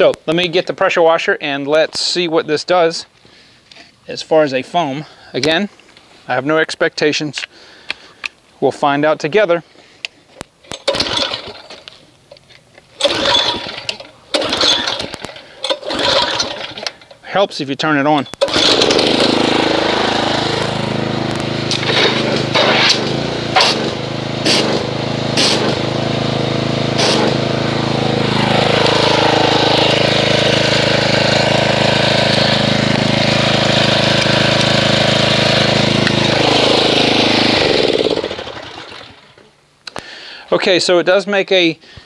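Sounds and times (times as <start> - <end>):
pressure washer motor humming: 10.8 - 11.8, 13.0 - 17.2, 18.4 - 39.5.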